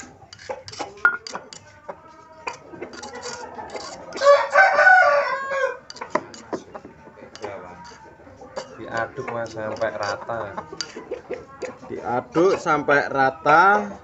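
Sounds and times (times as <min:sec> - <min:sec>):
rooster crowing: 0:03.2 - 0:05.9.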